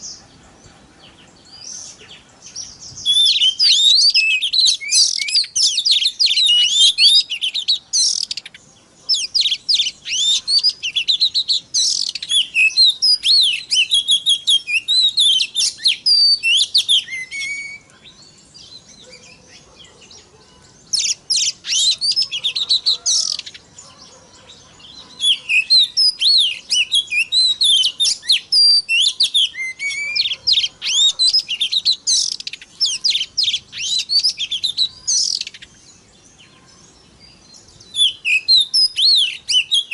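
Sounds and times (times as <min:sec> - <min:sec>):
bird singing whistles and chatter: 0:01.2 - 0:39.9.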